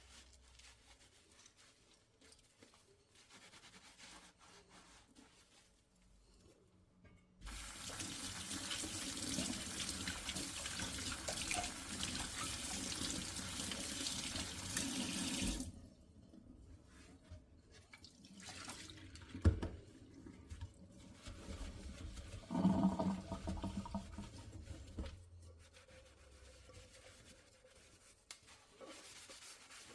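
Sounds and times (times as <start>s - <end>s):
tap running into sink: 19.4s - 19.8s.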